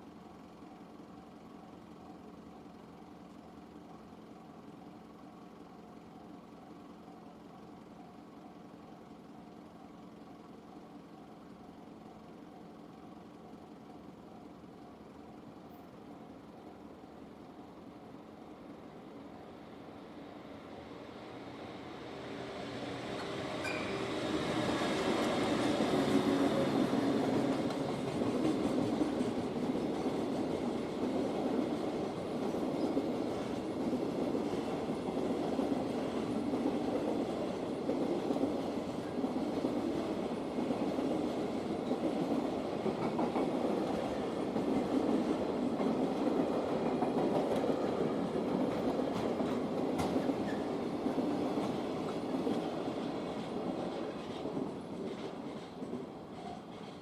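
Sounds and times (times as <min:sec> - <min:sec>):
freight train wheels on rails: 0:00.0 - 0:57.0.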